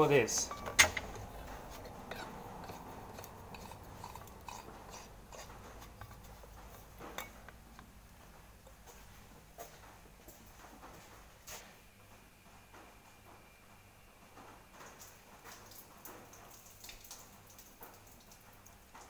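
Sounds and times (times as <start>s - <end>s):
faint handling clicks and clinks: 0.0s - 7.9s
low steady hum: 0.0s - 19.0s.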